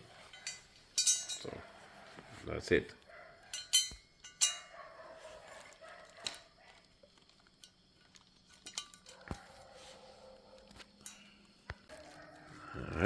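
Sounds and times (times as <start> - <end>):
small metal parts clinking: 0.2 - 1.6, 3.4 - 9.5, 10.7 - 12.1.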